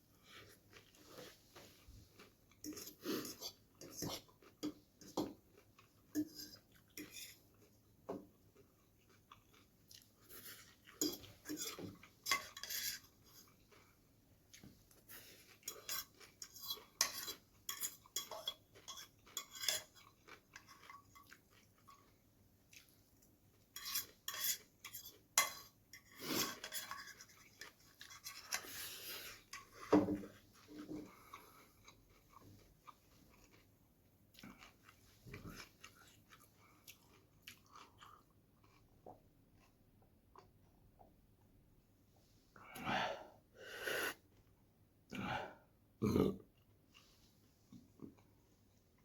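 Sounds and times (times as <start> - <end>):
chewing: 0.2 - 40.6
utensil scraping a dish: 11.0 - 13.1, 23.8 - 29.8.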